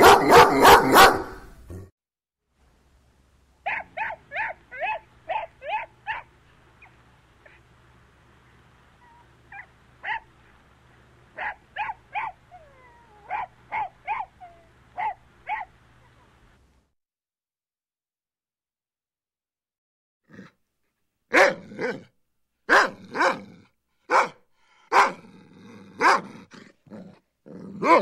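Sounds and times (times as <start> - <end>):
dog barking: 0.0 - 1.6, 3.6 - 7.6, 9.5 - 10.3, 11.4 - 12.4, 13.2 - 15.8, 21.3 - 22.1, 22.7 - 23.5, 24.1 - 25.3, 26.0 - 26.4, 27.8 - 28.0
dog whining: 3.7 - 7.6, 9.0 - 10.3, 11.4 - 16.3.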